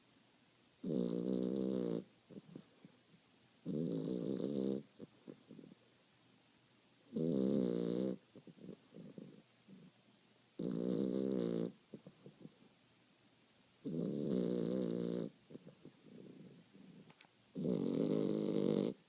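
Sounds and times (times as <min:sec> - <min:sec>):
person snoring loudly: 0:17.6 - 0:19.0.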